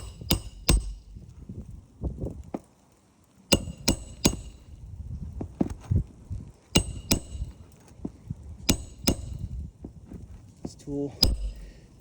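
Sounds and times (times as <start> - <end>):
hammer striking metal: 0.0 - 1.2, 3.5 - 4.7, 6.8 - 7.6, 8.7 - 9.6, 11.2 - 11.9
dull knocks: 11.2 - 11.8.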